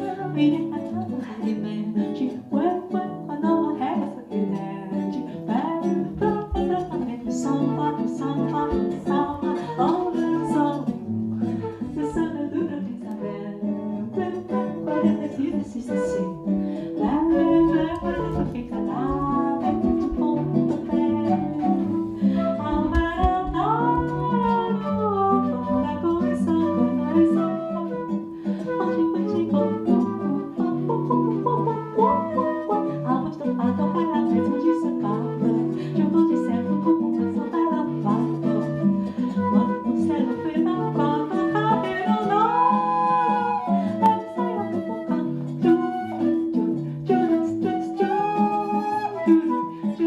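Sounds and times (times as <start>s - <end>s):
acoustic guitar bossa nova: 0.0s - 50.0s
person singing: 0.0s - 50.0s.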